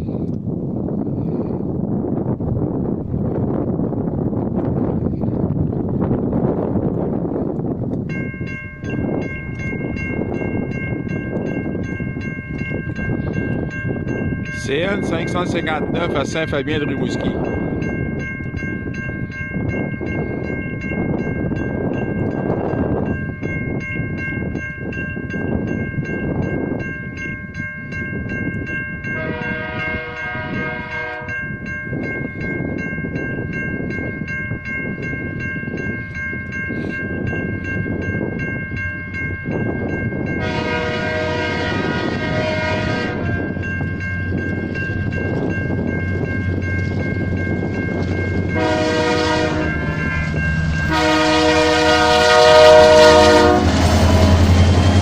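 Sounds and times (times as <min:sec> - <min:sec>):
freight train rumbling and clattering: 0:00.0 - 0:55.0
crossing bell ringing: 0:06.0 - 0:55.0
train air horn blasts: 0:29.2 - 0:31.4, 0:40.4 - 0:43.4, 0:48.6 - 0:50.0, 0:50.8 - 0:54.8.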